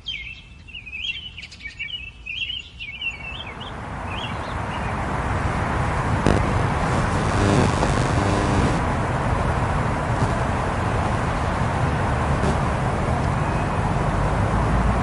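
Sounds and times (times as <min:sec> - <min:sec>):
bird chirps: 0:00.0 - 0:04.9
engine note passing: 0:03.7 - 0:15.0
passing cars and scooters: 0:03.7 - 0:15.0.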